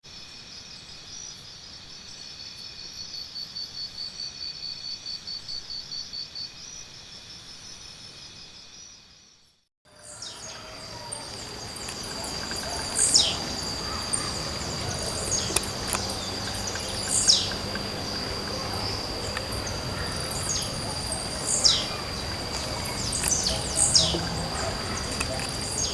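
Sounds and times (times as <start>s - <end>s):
pulsed insect trill: 9.9s - 25.9s
steady high insect drone: 9.9s - 25.9s.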